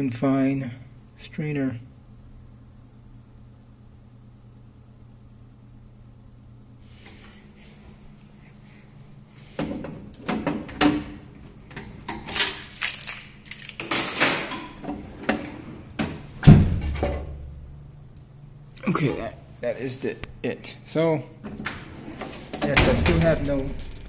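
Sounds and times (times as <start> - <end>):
low steady hum: 0.0 - 24.0
dishwasher knocks and clattering: 16.0 - 17.3
heavy deep thump: 16.4 - 17.5.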